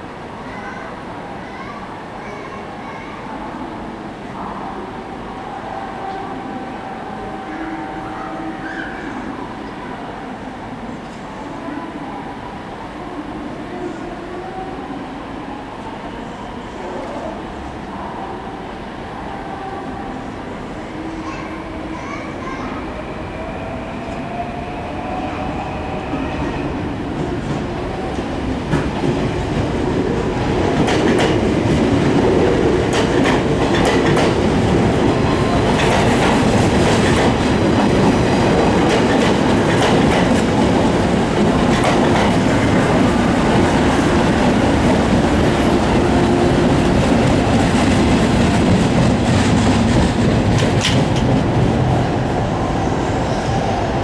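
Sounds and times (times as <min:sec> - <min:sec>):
train running on rails: 0:00.0 - 0:54.0
wheels clacking over rail joints: 0:35.7 - 0:52.3.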